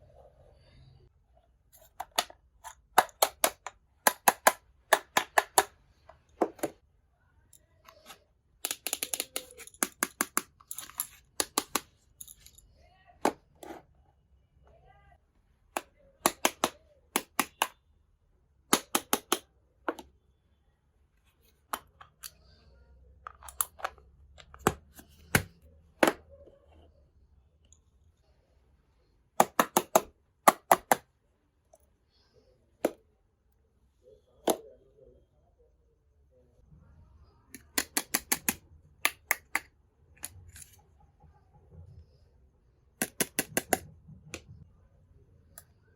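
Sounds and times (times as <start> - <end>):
toy kitchen pieces clicking: 1.8 - 6.7, 7.6 - 12.6, 15.7 - 17.8, 18.7 - 19.4, 23.2 - 26.2, 29.4 - 31.0, 37.6 - 40.9, 43.0 - 43.8.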